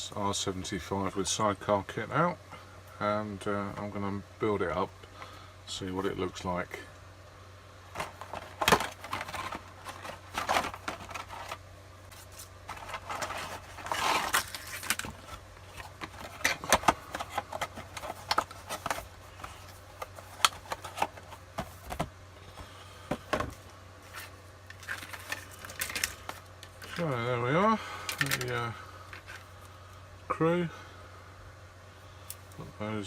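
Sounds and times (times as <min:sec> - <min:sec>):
faint low hum: 0:00.0 - 0:33.0
plastic parts clicking and scraping: 0:07.9 - 0:22.1, 0:23.1 - 0:27.1, 0:28.1 - 0:29.5.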